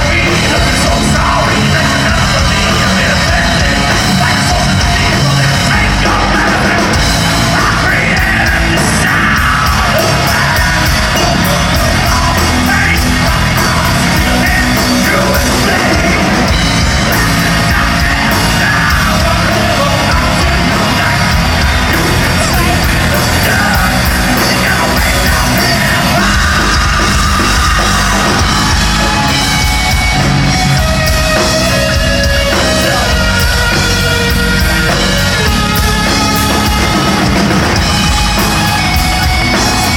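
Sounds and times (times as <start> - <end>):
hard rock band playing: 0.0 - 39.9.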